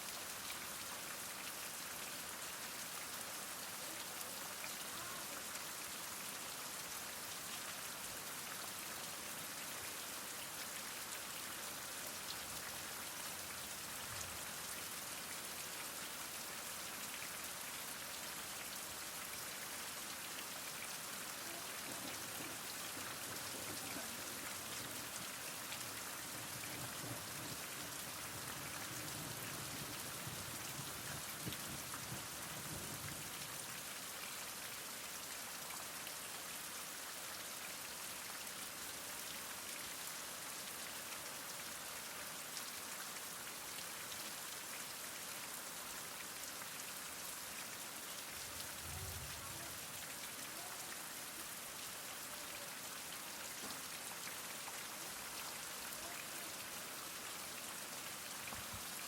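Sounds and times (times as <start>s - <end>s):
heavy rain falling: 2.2s - 16.4s, 18.4s - 34.1s, 47.8s - 59.0s.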